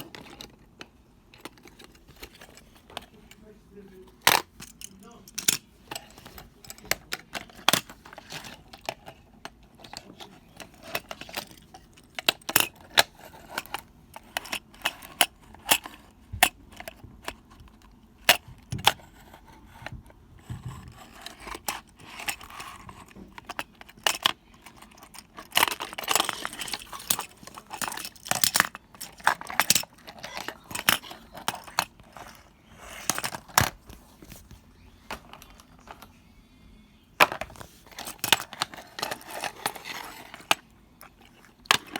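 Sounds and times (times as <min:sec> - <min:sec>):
plastic toy parts clicking: 0:04.2 - 0:17.4, 0:21.1 - 0:33.8.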